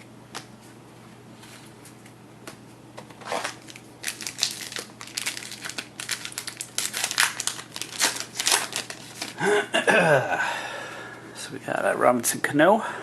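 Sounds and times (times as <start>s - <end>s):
wrapper crinkling and rustling: 3.2s - 9.4s.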